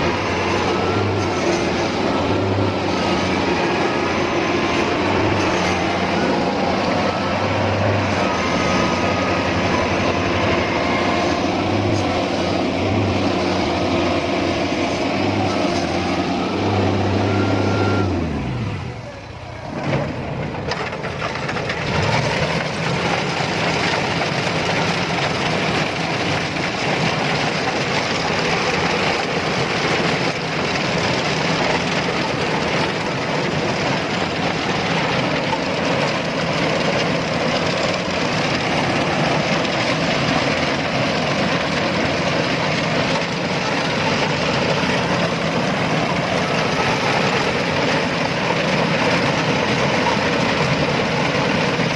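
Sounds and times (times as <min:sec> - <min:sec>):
combine harvester running: 0:00.0 - 0:51.9.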